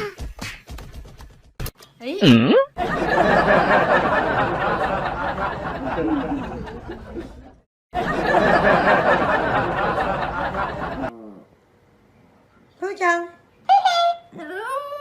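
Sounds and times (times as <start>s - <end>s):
people chattering and laughing: 2.8s - 11.1s.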